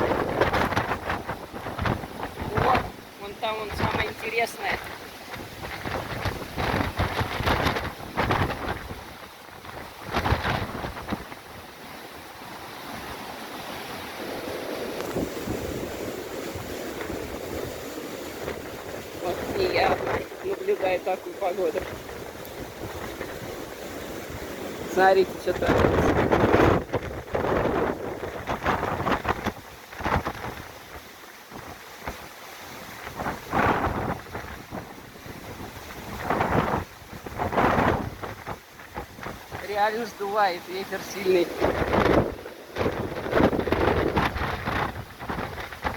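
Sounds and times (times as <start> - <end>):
heavy rain: 0.0 - 32.3
surf breaking on shore: 0.0 - 45.9
wind buffeting microphone: 0.0 - 45.9.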